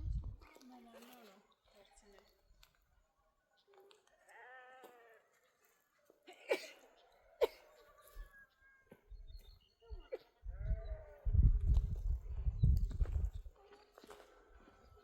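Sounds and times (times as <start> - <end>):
goats bleating: 4.2 - 5.3.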